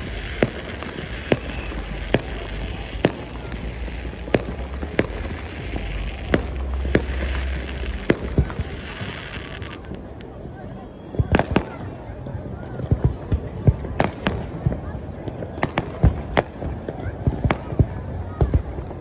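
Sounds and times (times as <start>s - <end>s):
firework bangs: 0.0s - 10.3s
fireworks crackling: 0.0s - 19.0s.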